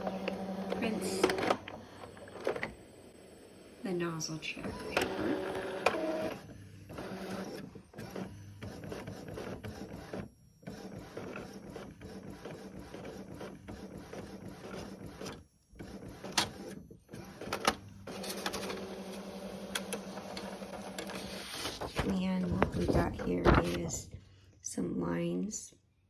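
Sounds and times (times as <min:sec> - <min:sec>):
inkjet printer running: 0:00.0 - 0:02.7, 0:04.6 - 0:23.7
printer clicks: 0:17.4 - 0:21.2.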